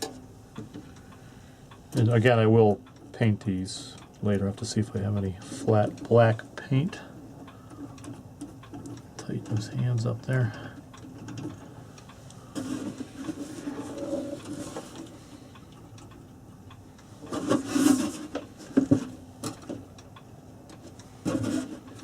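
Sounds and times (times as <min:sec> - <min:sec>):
rubbing and scraping on clock: 0:12.6 - 0:15.2, 0:17.2 - 0:19.2, 0:21.2 - 0:22.0.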